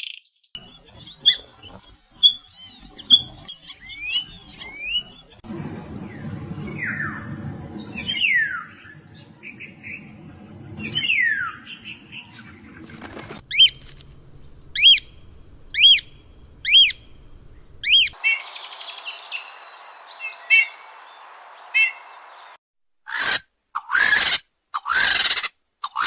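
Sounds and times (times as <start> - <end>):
steady hiss: 0.6 - 5.4, 13.4 - 22.6
bird rattling run of notes: 12.9 - 22.6
bird whistled call: 13.5 - 22.6.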